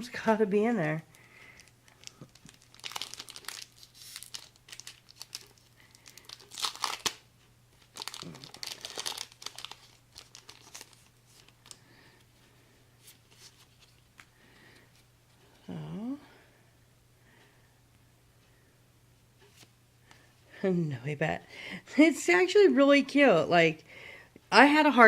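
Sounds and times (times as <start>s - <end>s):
foil wrapper crinkling and tearing: 0.8s - 7.2s, 7.8s - 11.8s
faint clicks and rustles: 1.1s - 15.6s.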